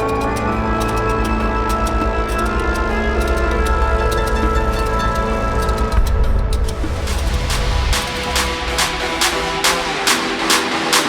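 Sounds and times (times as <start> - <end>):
drum and cymbal strokes: 6.7 - 11.0.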